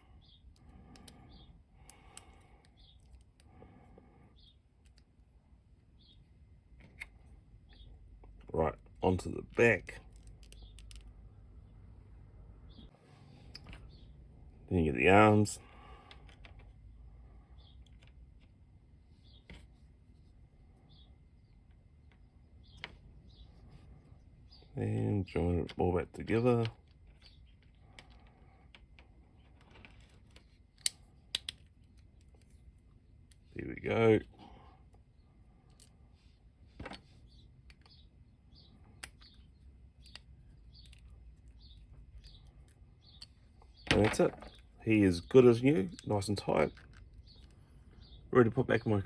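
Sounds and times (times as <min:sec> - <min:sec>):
plastic parts clicking: 0:00.5 - 0:03.5, 0:10.0 - 0:11.1, 0:26.6 - 0:32.6, 0:38.8 - 0:44.7, 0:45.9 - 0:47.6
plastic action figure clicks: 0:30.8 - 0:31.7.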